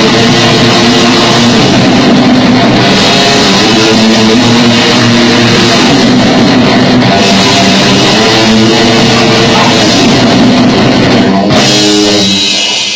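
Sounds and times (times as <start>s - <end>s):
distorted electric guitar: 0.0s - 12.9s
drum kit: 0.0s - 12.9s
ringing guitar chord: 0.0s - 12.9s.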